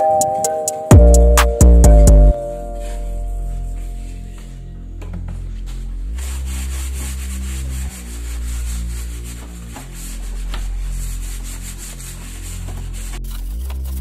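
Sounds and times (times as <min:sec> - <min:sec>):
background music with bass line: 0:00.0 - 0:14.0
rough rubbing noise: 0:05.3 - 0:14.0.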